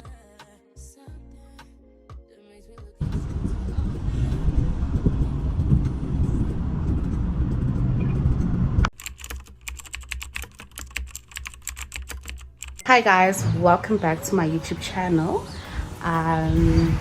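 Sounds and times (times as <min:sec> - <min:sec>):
typing on a computer keyboard: 0:08.9 - 0:12.8.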